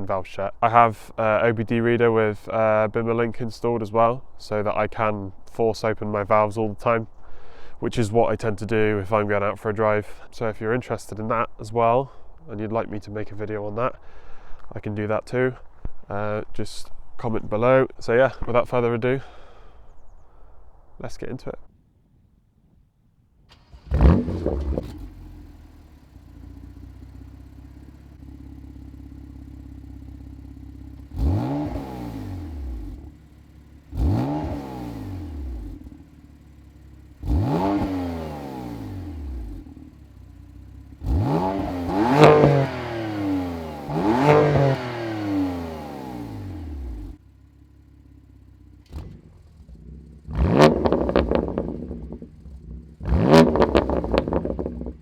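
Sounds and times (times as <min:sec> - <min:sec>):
car engine idling: 0:23.4 - 0:55.0
car engine starting: 0:23.4 - 0:55.0
engine revving: 0:23.5 - 0:55.0.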